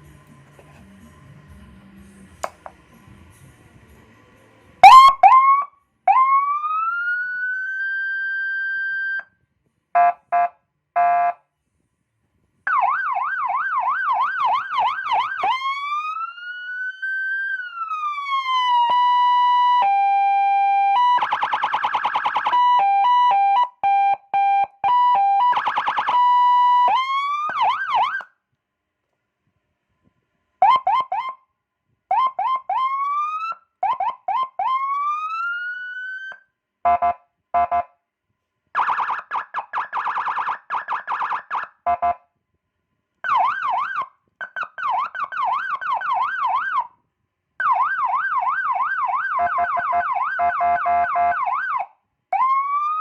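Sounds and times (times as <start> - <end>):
electronic police siren: 4.8 - 9.3, 12.7 - 28.3, 30.6 - 31.4, 32.1 - 37.9, 38.8 - 42.2, 43.2 - 47.0, 47.6 - 53.0.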